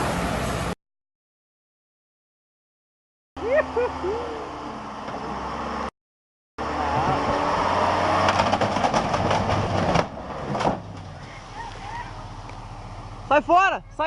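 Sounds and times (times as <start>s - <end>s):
low engine hum: 3.4s - 5.9s, 6.6s - 14.0s
engine knocks and clatter: 8.1s - 14.0s.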